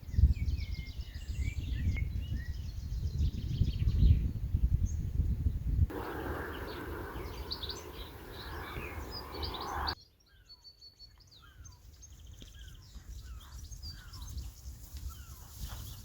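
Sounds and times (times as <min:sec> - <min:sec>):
steady rushing noise: 0:05.9 - 0:10.0
small birds chirping: 0:05.9 - 0:16.0.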